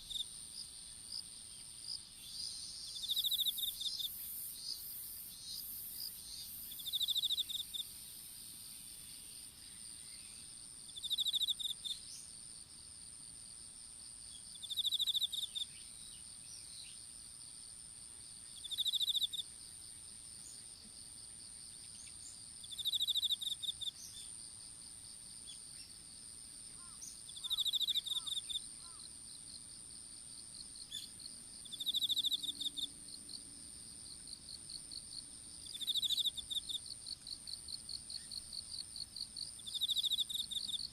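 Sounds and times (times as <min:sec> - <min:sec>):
insect rapid chirping: 0:00.0 - 0:13.1, 0:14.1 - 0:17.4, 0:18.0 - 0:40.9
insect pulsing trill: 0:31.7 - 0:32.9.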